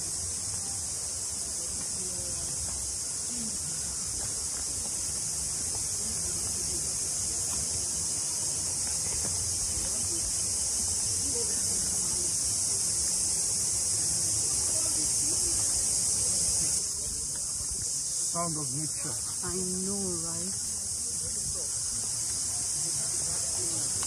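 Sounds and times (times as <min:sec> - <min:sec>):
insects shrilling: 0:00.0 - 0:24.0.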